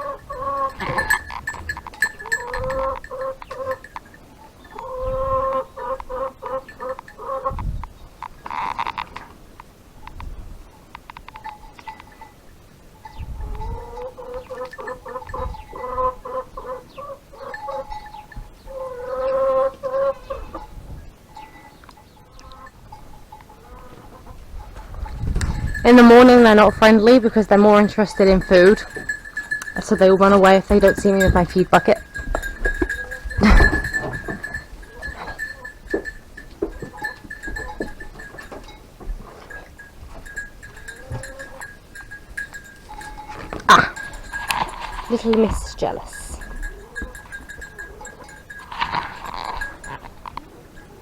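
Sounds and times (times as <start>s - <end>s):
hen clucking: 0.0s - 7.7s, 13.0s - 20.8s, 21.4s - 50.1s
knocks and rustles: 27.6s - 50.4s.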